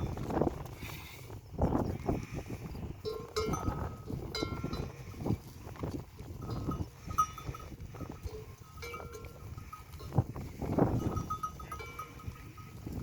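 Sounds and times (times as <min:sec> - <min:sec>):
camels crunching food: 0:00.0 - 0:13.0
small bells clinking: 0:03.0 - 0:05.2, 0:06.2 - 0:13.0.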